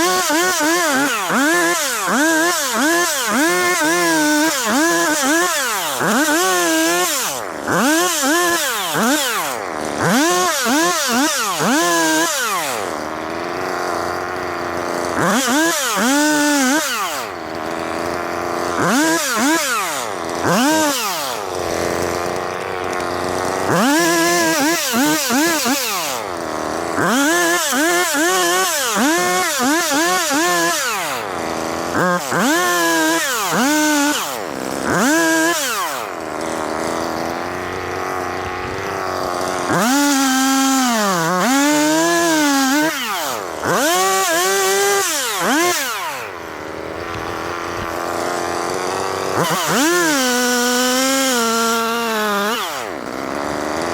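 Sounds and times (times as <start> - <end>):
chainsaw revving and idling: 0.0 - 53.9.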